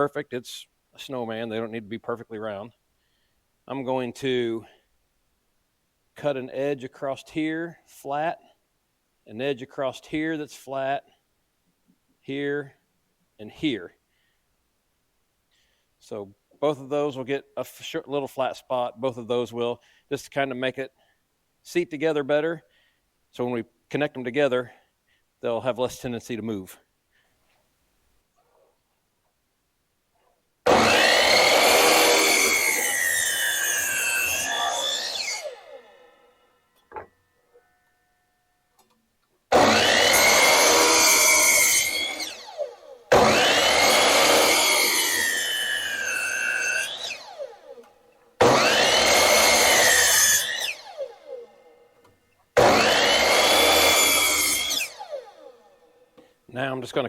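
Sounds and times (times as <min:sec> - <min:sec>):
chainsaw cutting a log: 0:30.6 - 0:37.1, 0:39.5 - 0:51.7, 0:52.6 - 0:55.8.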